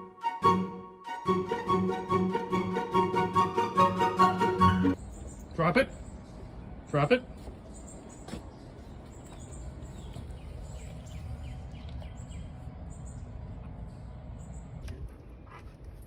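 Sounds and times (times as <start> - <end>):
small birds chirping: 5.0 - 15.5.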